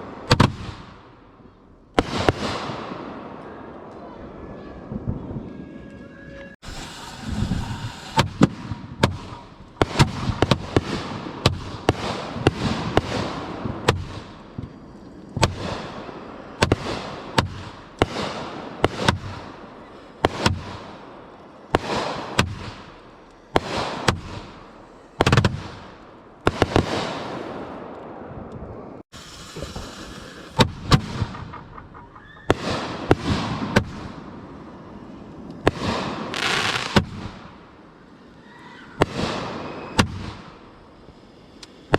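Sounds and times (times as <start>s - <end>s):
firework crackle: 0.0s - 41.9s
firework shells banging: 6.6s - 27.3s, 29.4s - 34.3s.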